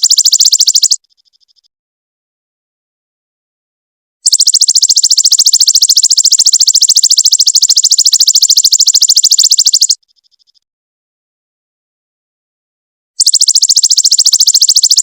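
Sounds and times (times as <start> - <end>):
songbird rapid trill: 0.0 - 1.7, 4.2 - 10.7, 13.2 - 15.0.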